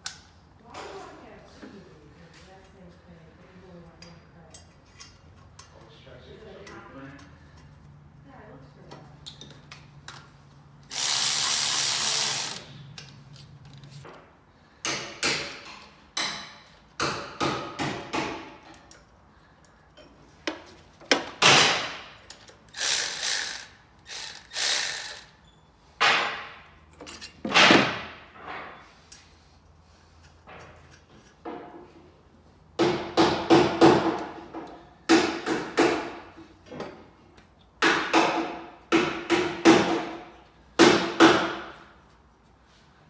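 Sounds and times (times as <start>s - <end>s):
ratchet wrench clicking: 10.8s - 12.8s, 22.3s - 25.3s.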